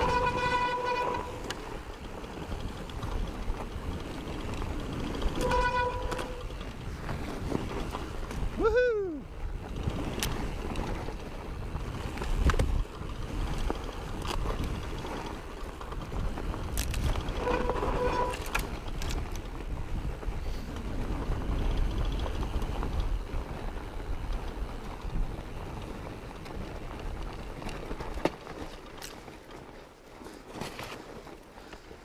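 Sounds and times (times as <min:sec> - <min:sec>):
pitched squeal: 0:00.0 - 0:01.5, 0:17.4 - 0:18.5
bike rattling over bumps: 0:00.0 - 0:32.0
tyre and wind rumble: 0:00.0 - 0:32.0.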